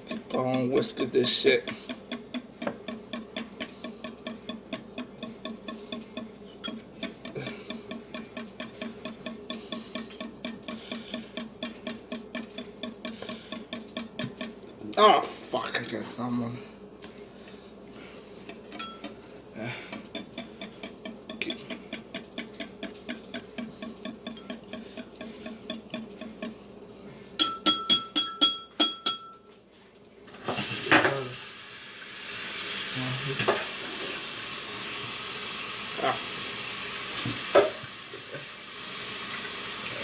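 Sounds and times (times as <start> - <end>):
whisk tapping against bowl: 0.0 - 14.6, 20.0 - 26.6, 27.4 - 29.4
eggs being whisked in a bowl: 0.0 - 14.7, 15.8 - 29.2
food sizzling in a hot pan: 30.5 - 40.0.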